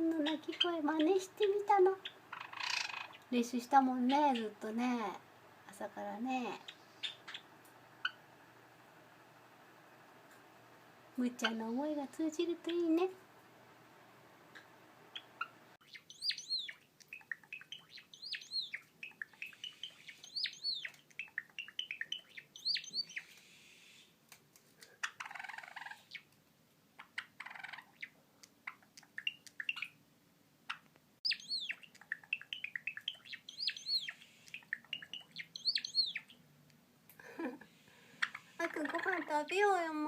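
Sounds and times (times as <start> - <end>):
sparrow singing: 0.1 - 4.6, 6.4 - 8.2, 15.1 - 23.9, 27.0 - 30.0, 30.7 - 36.4.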